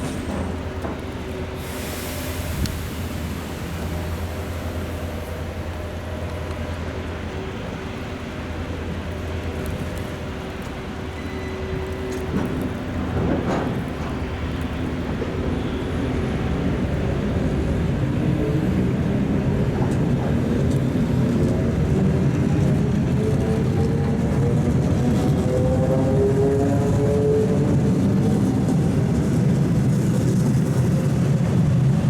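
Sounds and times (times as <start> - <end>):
train clatter: 0.0 - 7.8, 8.6 - 17.0
electric train rumbling: 0.0 - 32.0.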